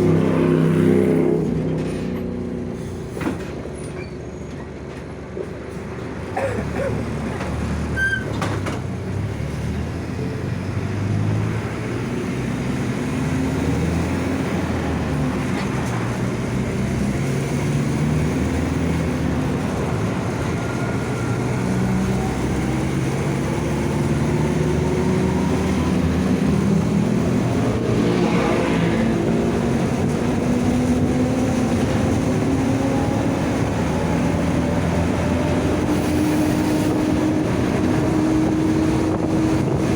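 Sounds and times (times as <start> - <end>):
bus engine running: 0.0 - 39.9
differential growling: 25.6 - 34.4.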